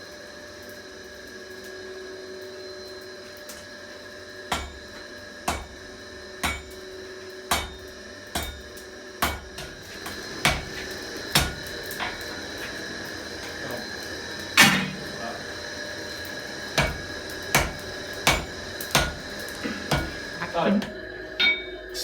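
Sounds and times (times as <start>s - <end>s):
steady background hum: 0.0s - 22.0s
hammer striking steel on anvil: 4.5s - 5.8s, 6.4s - 6.8s, 7.5s - 12.3s, 14.6s - 15.1s, 16.8s - 20.3s, 21.4s - 21.8s.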